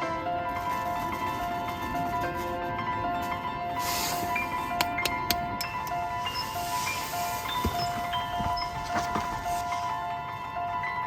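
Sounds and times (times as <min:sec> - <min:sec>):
bell-like chiming melody: 0:02.8 - 0:11.0.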